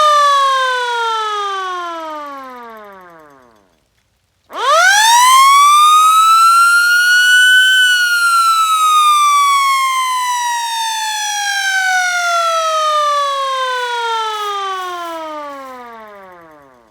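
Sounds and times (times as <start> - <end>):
siren winding up and down: 0.0 - 3.8, 4.5 - 16.9.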